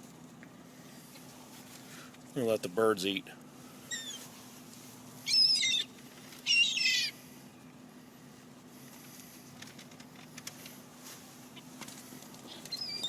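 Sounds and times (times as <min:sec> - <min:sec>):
low steady hum: 0:00.0 - 0:13.0
high bird calls: 0:03.8 - 0:04.3, 0:05.2 - 0:07.2, 0:12.5 - 0:13.0.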